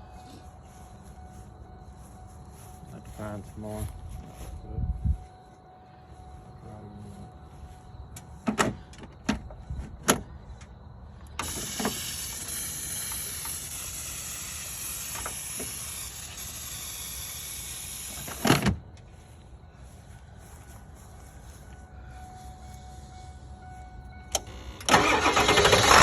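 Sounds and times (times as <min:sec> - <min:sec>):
aerosol can spraying: 0:11.5 - 0:18.4.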